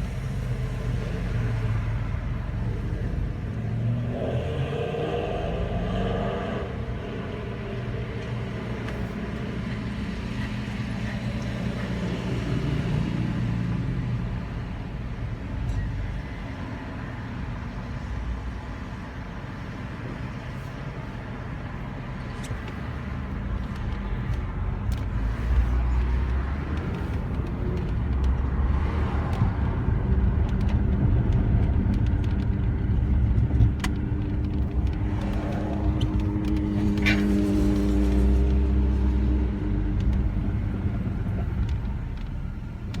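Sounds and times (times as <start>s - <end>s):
car driving rumble: 0.0s - 43.0s
wheel grinding and clicking: 21.7s - 43.0s.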